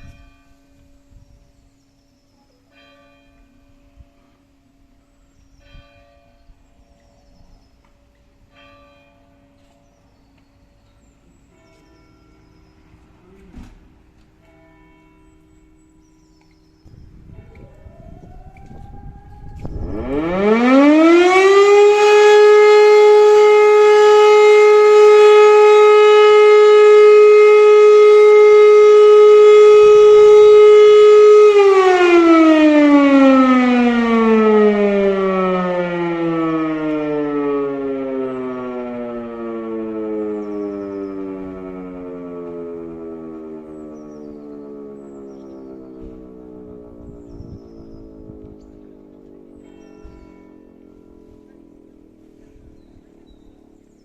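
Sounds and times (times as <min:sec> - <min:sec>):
motor siren howling: 0:16.4 - 0:54.0.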